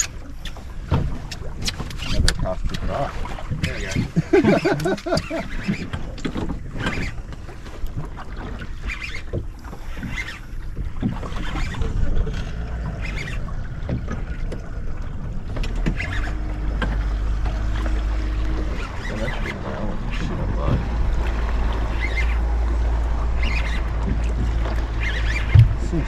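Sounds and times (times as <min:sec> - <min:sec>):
water wash: 0:00.0 - 0:26.0
low hum: 0:11.7 - 0:26.0
wind noise: 0:25.3 - 0:26.0
short knocks: 0:25.4 - 0:26.0.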